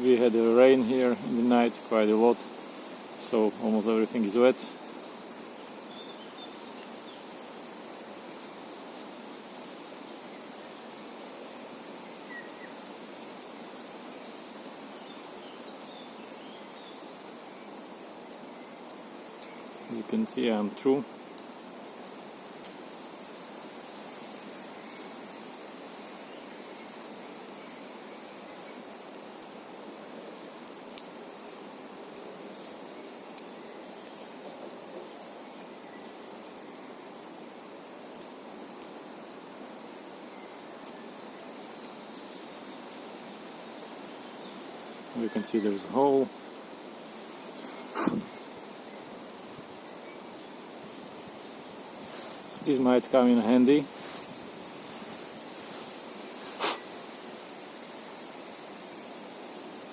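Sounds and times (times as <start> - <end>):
outdoor background hiss: 0.0 - 59.9
faint bird chirps: 11.9 - 12.9, 43.6 - 46.3
faint ticks: 22.6 - 22.8, 30.6 - 34.2.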